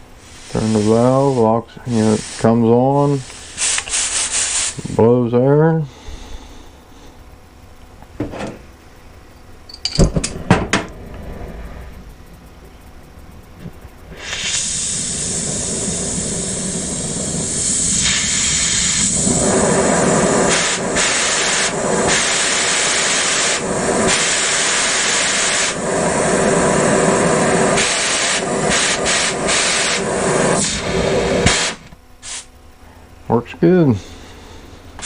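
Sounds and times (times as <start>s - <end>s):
gas hissing from cutting torch: 0.0s - 5.2s, 14.0s - 32.6s.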